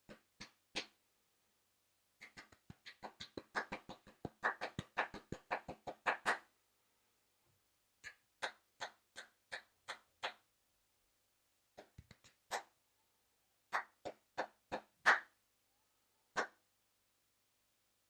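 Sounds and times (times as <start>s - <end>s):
person clapping hands: 2.2s - 6.5s, 8.0s - 10.4s, 11.8s - 12.7s, 13.7s - 15.3s.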